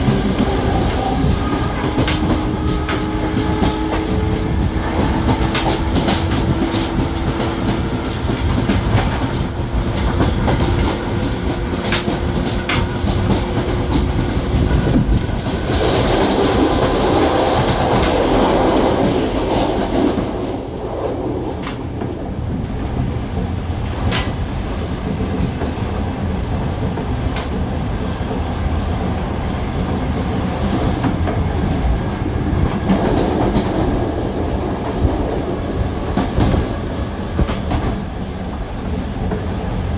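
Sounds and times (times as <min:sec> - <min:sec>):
wheels clicking over rails: 0:00.0 - 0:20.7
train rumbling along track: 0:00.0 - 0:39.9.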